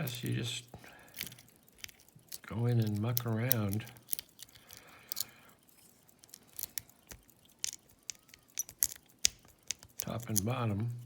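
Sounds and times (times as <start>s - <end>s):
lock pick metallic clicks: 1.1s - 10.5s.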